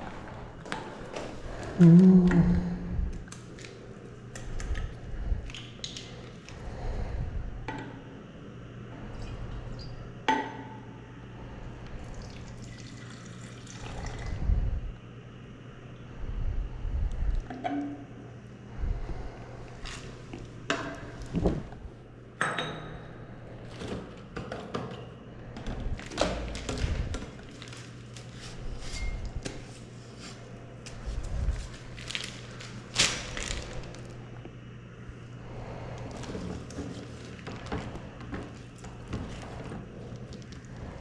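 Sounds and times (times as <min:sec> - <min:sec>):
steady low hum: 0:00.0 - 0:41.0.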